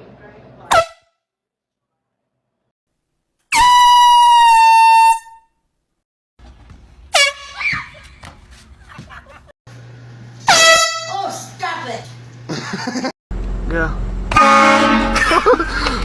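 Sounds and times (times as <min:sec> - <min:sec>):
air horn blast: 0:07.1 - 0:07.6, 0:10.4 - 0:11.5, 0:14.3 - 0:15.3.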